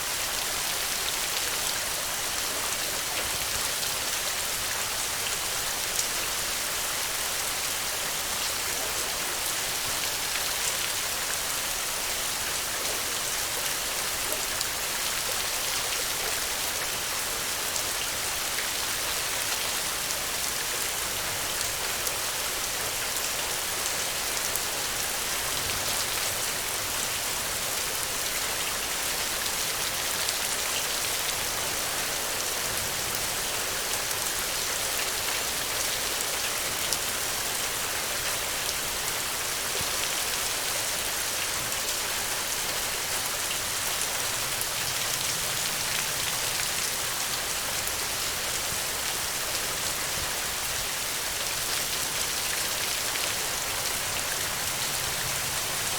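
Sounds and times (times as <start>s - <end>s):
steady rain falling: 0.0s - 55.9s.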